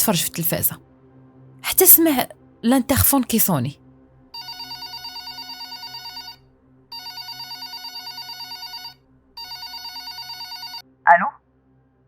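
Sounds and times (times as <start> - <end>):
electronic telephone ring: 4.4 - 10.8.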